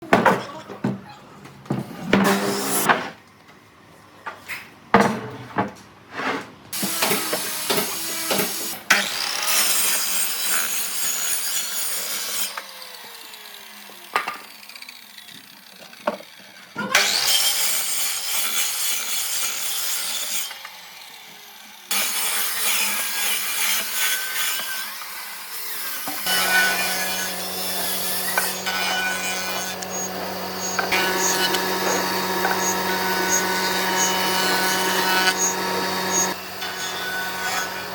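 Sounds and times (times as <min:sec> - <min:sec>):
wood being sawn: 0:25.7 - 0:37.9
machine hum: 0:26.3 - 0:37.9.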